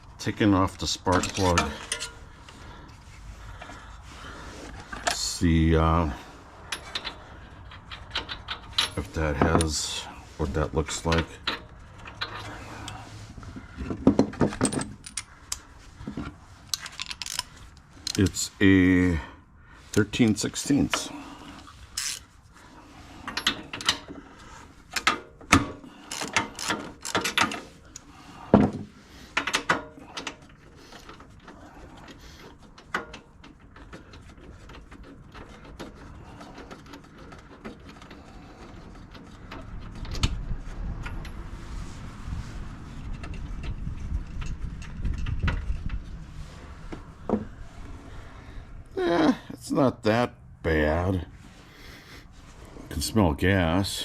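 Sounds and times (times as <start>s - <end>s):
ratchet clicking: 22.0s - 22.2s.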